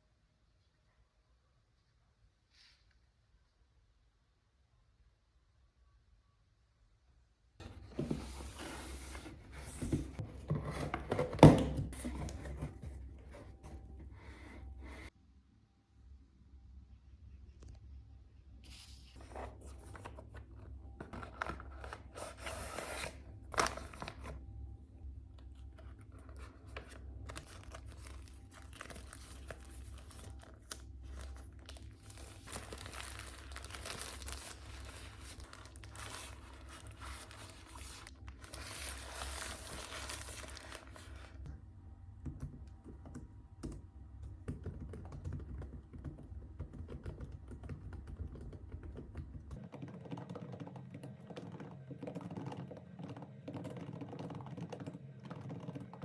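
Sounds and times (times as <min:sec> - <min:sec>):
crinkling and tearing: 0:27.3 - 0:41.4
scattered clicks and taps: 0:42.2 - 0:56.0.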